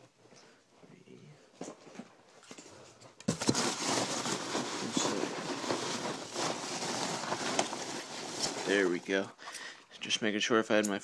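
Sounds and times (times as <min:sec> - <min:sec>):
packaging crinkling and rustling: 0:03.2 - 0:09.3.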